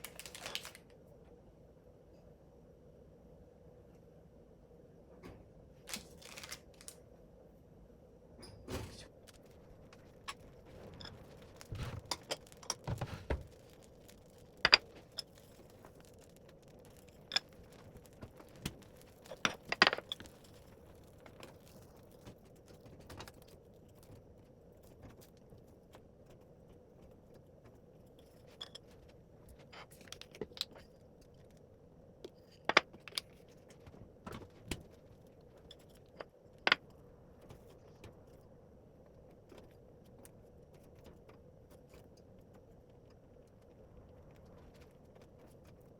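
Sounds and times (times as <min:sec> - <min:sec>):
faint steady hum: 0:00.0 - 0:45.9.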